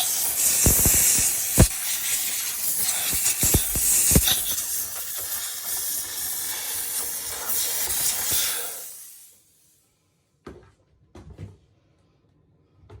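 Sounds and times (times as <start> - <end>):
steam cleaner hissing: 0.0 - 9.7.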